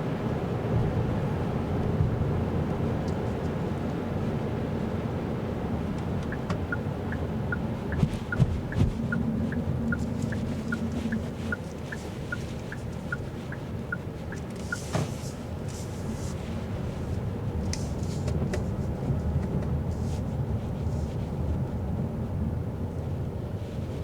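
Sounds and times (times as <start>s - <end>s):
road and tyre rumble: 0.0s - 24.0s
turn signal ticking: 5.8s - 15.7s.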